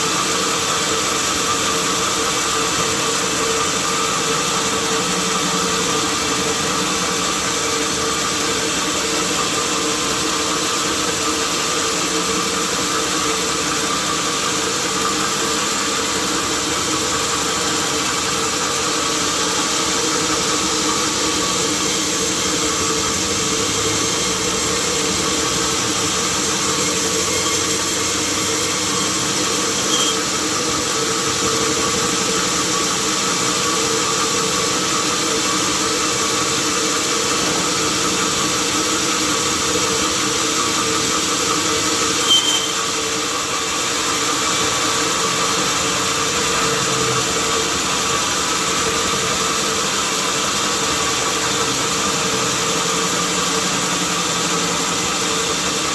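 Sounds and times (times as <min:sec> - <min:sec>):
sawmill machinery humming: 0:01.4 - 0:55.9
high squeaks: 0:29.0 - 0:30.3, 0:42.2 - 0:42.9.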